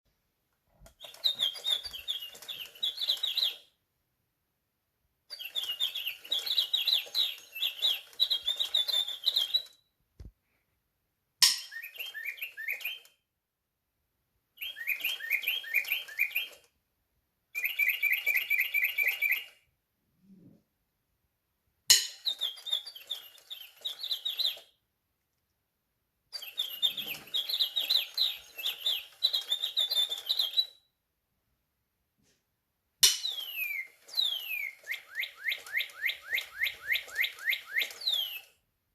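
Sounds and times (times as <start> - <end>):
toy bird chirping: 0.9 - 3.8, 5.3 - 9.9, 11.4 - 13.2, 14.5 - 16.7, 17.5 - 19.7, 21.9 - 24.8, 26.3 - 30.9, 33.0 - 38.6.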